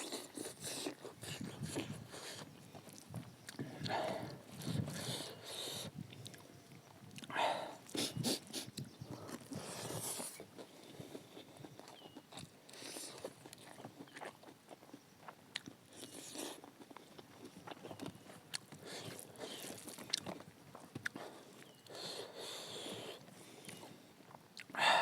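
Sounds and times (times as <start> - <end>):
person chewing and crunching food: 0.0 - 24.8.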